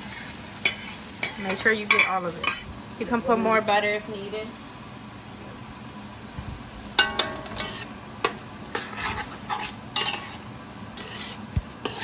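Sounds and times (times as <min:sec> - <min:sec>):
spoon scraping in pot: 0:00.0 - 0:02.7, 0:07.2 - 0:08.0, 0:08.7 - 0:12.0
spoon clinking on pot: 0:07.0 - 0:07.7.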